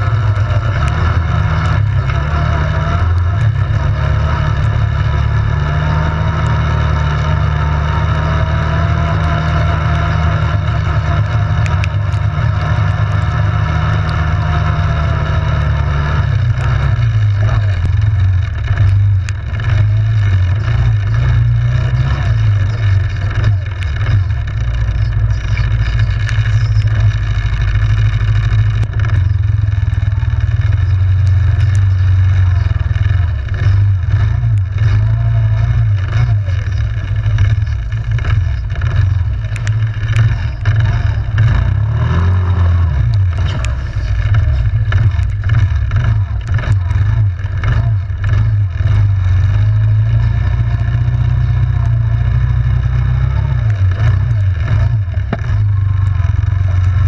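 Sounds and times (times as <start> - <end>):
atv engine droning: 0.0 - 57.0
clicks and knocks over rough ground: 16.4 - 57.0.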